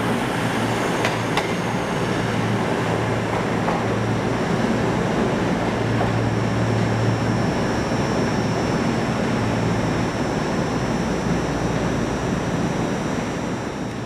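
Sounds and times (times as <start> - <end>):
train rushing noise: 0.0 - 7.7.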